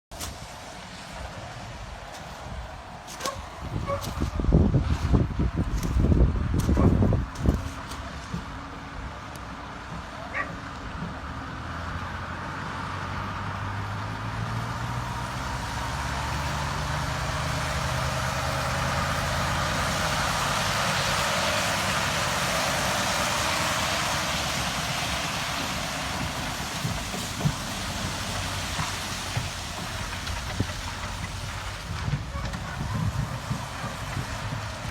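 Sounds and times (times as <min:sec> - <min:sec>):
road noise: 0:00.0 - 0:34.9
diesel engine hum: 0:00.1 - 0:34.9.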